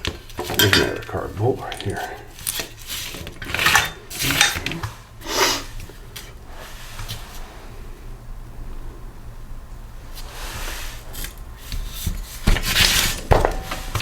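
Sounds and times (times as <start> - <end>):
metal tools clattering: 0.3 - 5.0, 12.0 - 14.0
faint handling noise: 10.1 - 14.0.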